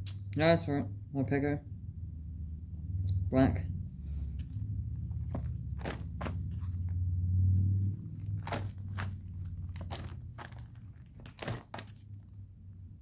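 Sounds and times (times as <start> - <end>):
plastic sleeves crinkling: 4.1 - 12.4.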